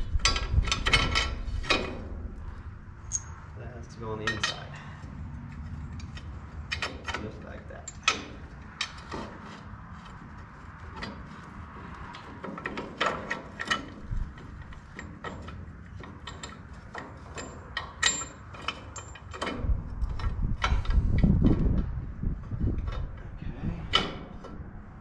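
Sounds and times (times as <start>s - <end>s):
metal machine parts clanking: 0.0s - 2.4s, 4.1s - 4.9s, 5.6s - 9.6s, 12.3s - 21.3s, 23.8s - 24.7s
low rumble: 19.6s - 25.0s.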